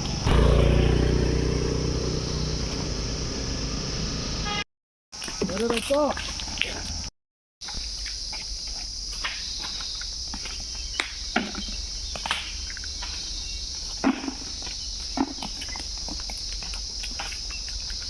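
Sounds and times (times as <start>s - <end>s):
insect chorus: 0.0s - 4.6s, 5.2s - 18.0s.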